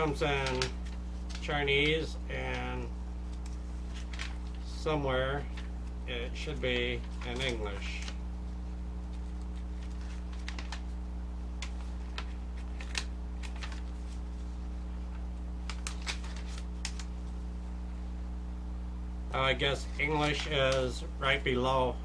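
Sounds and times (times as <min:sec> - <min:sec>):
paper pages rustling: 0:00.0 - 0:17.4, 0:19.8 - 0:21.0
steady low hum: 0:00.0 - 0:22.0.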